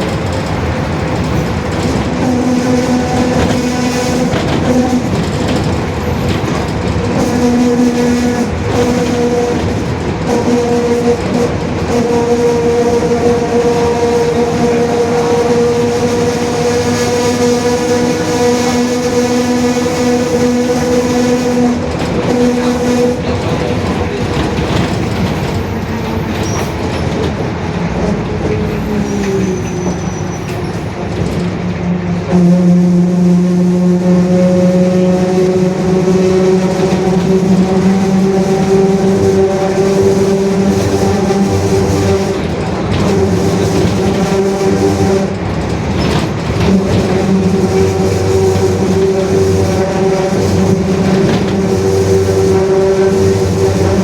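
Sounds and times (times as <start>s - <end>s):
bus engine rumble: 0.0s - 54.0s
differential droning: 32.2s - 54.0s.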